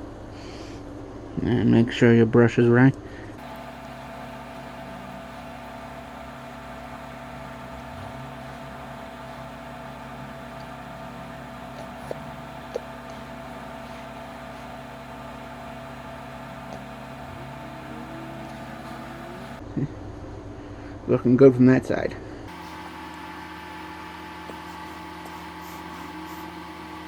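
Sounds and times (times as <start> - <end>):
steady machine hum: 3.4 - 19.6, 22.5 - 27.0.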